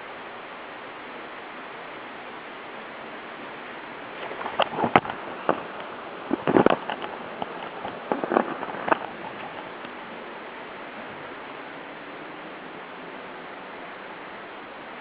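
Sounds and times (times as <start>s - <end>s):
mountain stream rushing: 0.0s - 15.0s
knocks and scrapes: 4.2s - 9.7s.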